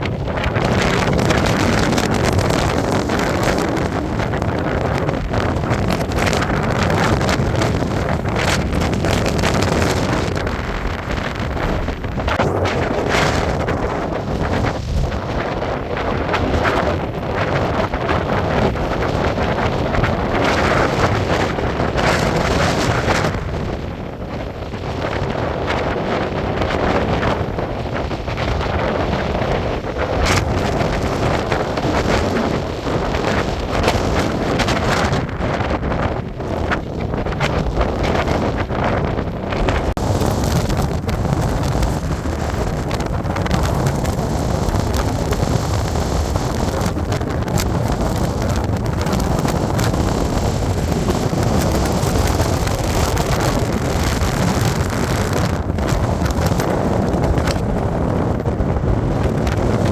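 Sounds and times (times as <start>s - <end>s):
wind buffeting microphone: 0.0s - 59.9s.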